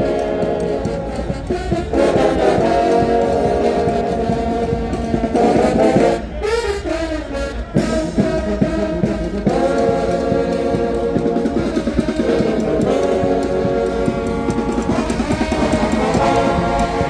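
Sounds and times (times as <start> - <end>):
brass band playing chords: 0.0 - 17.0.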